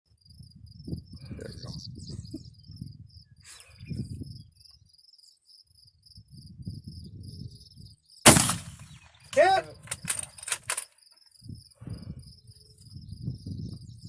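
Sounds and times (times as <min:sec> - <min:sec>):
crickets chirping: 0:00.1 - 0:14.0.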